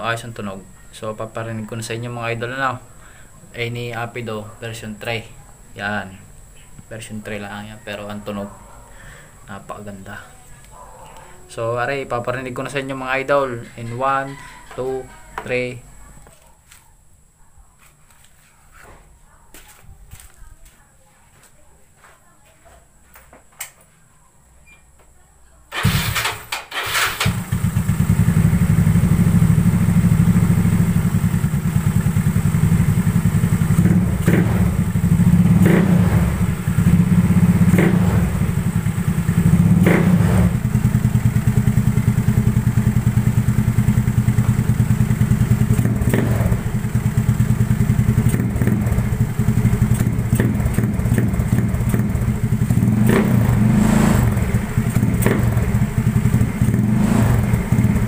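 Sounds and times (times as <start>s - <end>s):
scooter engine pulsing exhaust: 25.8s - 58.0s
exhaust cracks: 31.4s - 58.0s.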